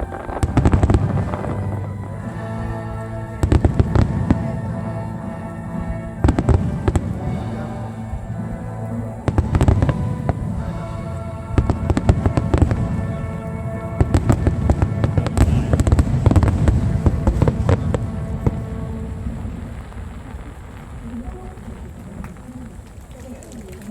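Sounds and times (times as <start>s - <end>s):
music with held notes: 0.0s - 20.6s
fireworks bursting with bangs: 0.0s - 23.9s.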